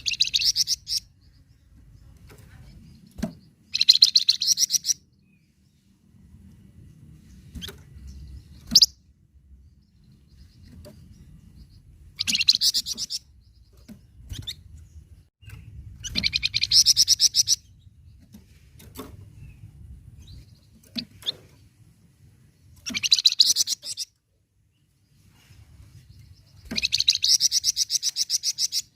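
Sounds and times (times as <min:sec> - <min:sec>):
songbird trilling: 0:00.0 - 0:01.4, 0:03.6 - 0:05.0, 0:12.1 - 0:14.6, 0:15.4 - 0:17.8, 0:22.8 - 0:24.2, 0:26.5 - 0:28.9.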